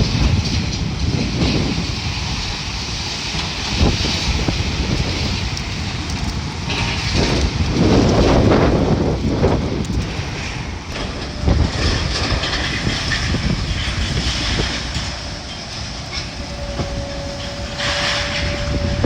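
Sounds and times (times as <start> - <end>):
demolition machinery rumbling: 0.0 - 19.0
wind buffeting microphone: 0.0 - 19.0
debris breaking: 10.9 - 15.1
steady tone: 15.8 - 19.0.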